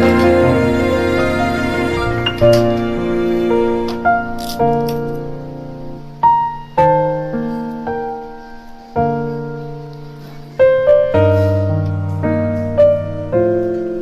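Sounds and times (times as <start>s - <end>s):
slow piano music: 0.0s - 14.0s.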